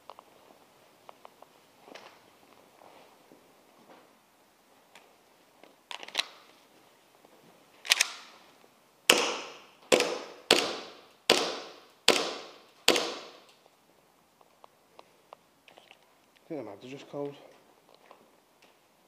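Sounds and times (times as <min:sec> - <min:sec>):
airsoft gun shots: 0:09.1 - 0:13.5.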